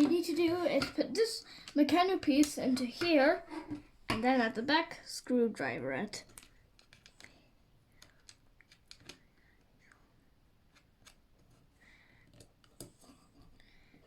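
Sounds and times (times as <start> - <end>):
plastic toy parts clicking: 6.3 - 7.4, 8.0 - 9.2.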